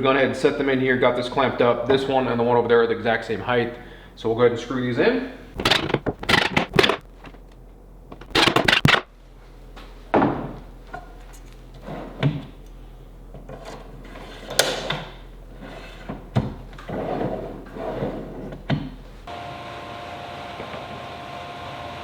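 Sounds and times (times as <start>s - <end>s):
knocks and thunks on wood: 5.6s - 7.1s, 8.1s - 9.1s, 10.1s - 10.6s.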